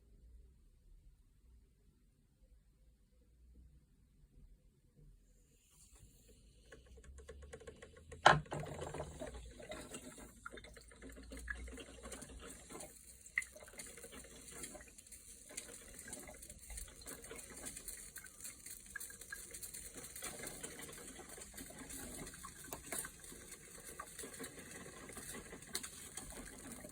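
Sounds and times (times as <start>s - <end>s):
coffee maker rushing watery noise: 6.0s - 26.9s.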